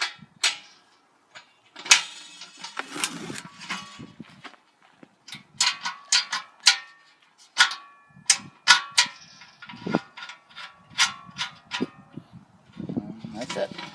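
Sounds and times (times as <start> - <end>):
metal mailbox latch clicking and clanking: 5.3 - 12.0.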